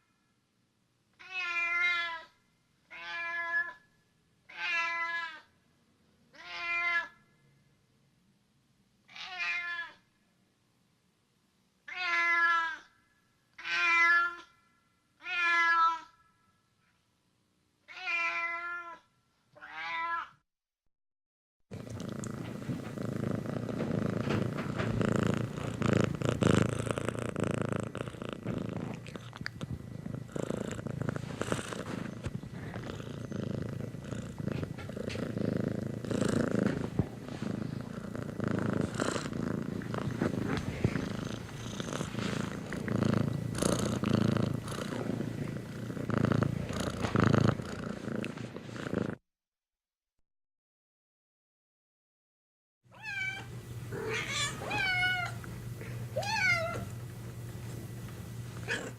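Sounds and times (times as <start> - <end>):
cat purring: 21.7 - 49.2, 56.8 - 58.9.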